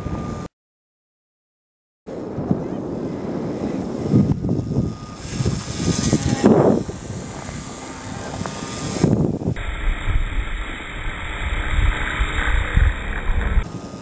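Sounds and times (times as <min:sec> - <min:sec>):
wind buffeting on microphone: 0:02.1 - 0:14.0
model plane motor whining: 0:03.6 - 0:14.0.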